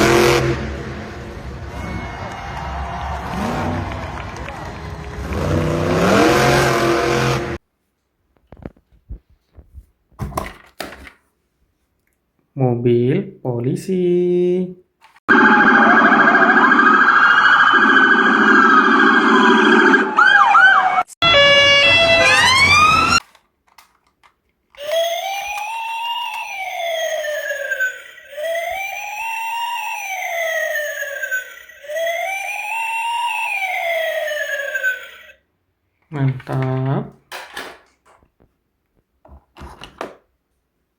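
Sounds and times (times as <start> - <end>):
truck engine revving: 0.0 - 7.6, 21.3 - 23.2
crowd-like noise: 0.1 - 7.6
toy police siren wailing: 15.3 - 23.2, 24.8 - 35.4.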